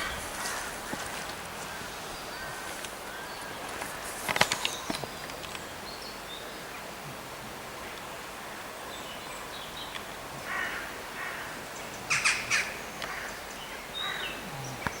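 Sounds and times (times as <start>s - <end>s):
crow cawing: 0.0s - 3.3s, 10.4s - 13.4s
small birds chirping: 11.7s - 15.0s.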